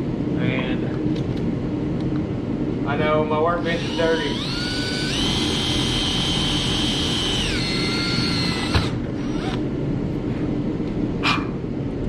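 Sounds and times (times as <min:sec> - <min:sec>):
power drill boring through plastic: 0:03.6 - 0:09.6.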